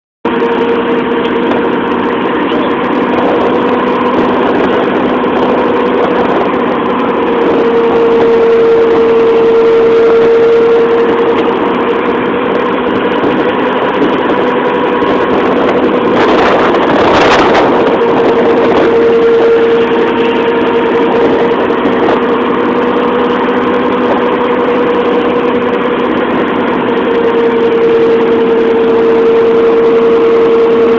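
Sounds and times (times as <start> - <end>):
boat engine droning: 0.2 - 30.9.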